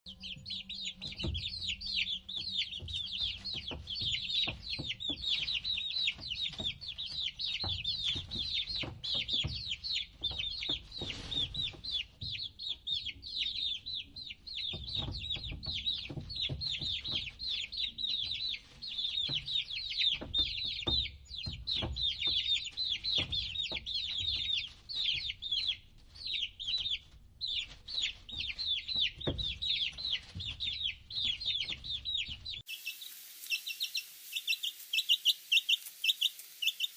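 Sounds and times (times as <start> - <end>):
baby chicks peeping: 0.1 - 36.9.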